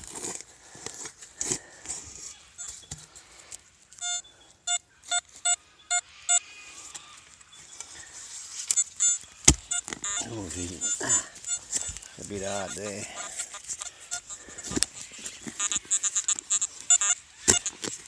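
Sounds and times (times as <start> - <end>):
metal detector short beeps: 4.0 - 6.4, 8.7 - 17.8
digging scraping knocks: 8.6 - 18.0.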